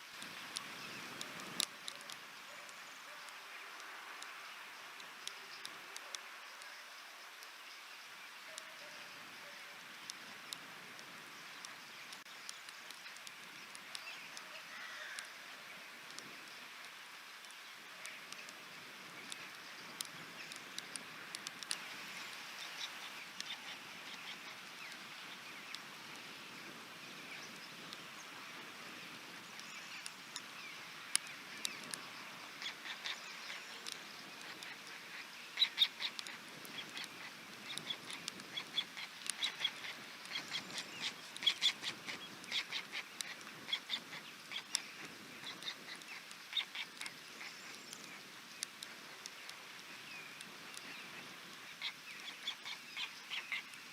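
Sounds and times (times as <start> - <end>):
rain hissing: 0.0 - 53.9.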